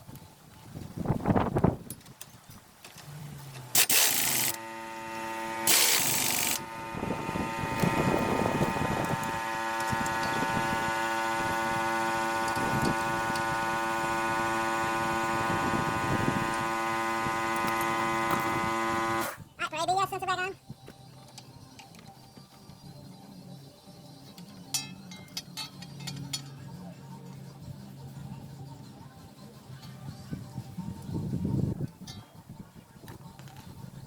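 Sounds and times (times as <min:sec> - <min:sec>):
motor humming: 0:03.1 - 0:19.5
hissing power tool: 0:03.8 - 0:19.4.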